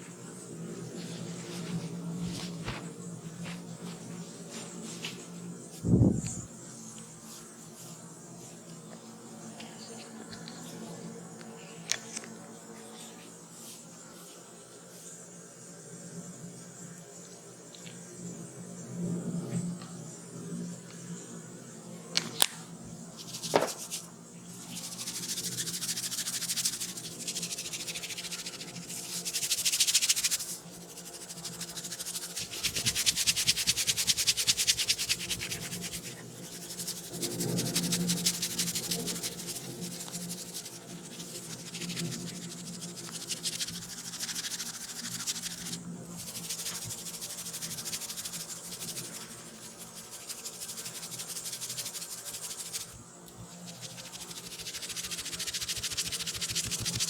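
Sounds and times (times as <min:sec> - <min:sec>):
rubbing and scratching on scalp: 0:23.2 - 0:57.0.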